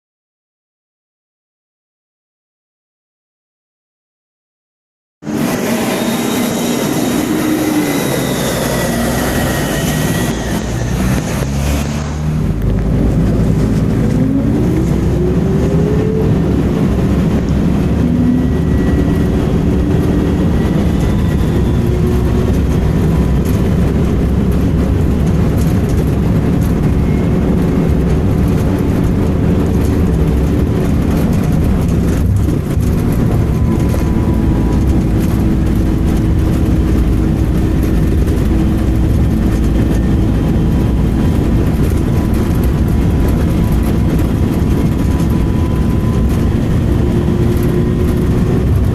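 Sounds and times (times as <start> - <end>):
bus diesel engine running: 5.2 - 48.9
road noise: 5.2 - 48.9
faint high-pitched screech: 5.3 - 12.2.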